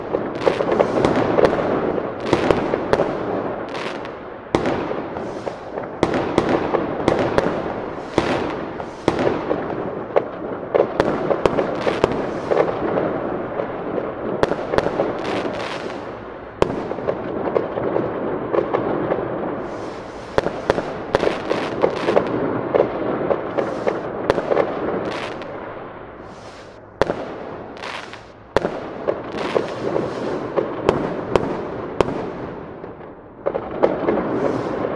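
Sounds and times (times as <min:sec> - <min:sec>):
fireworks bangs and crackling: 0:00.0 - 0:34.9.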